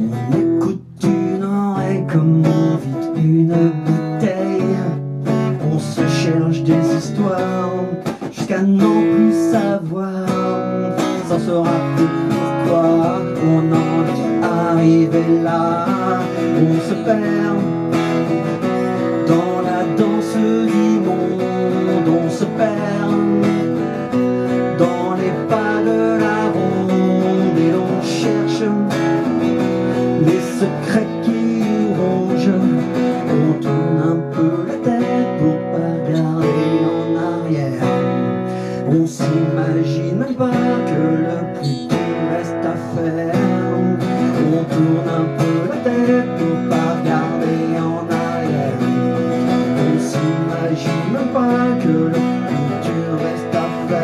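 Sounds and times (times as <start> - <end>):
acoustic guitar strummed and picked: 0.0 - 54.0.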